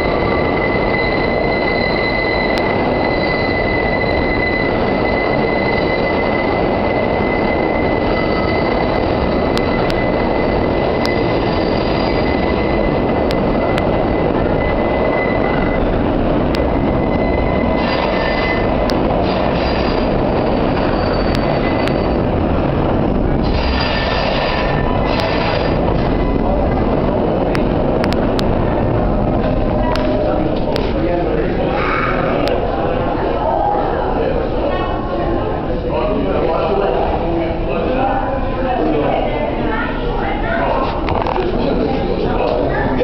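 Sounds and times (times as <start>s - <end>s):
train wheels squealing: 0.0s - 16.0s, 16.8s - 22.6s, 23.4s - 26.4s
train rumble: 0.0s - 43.0s.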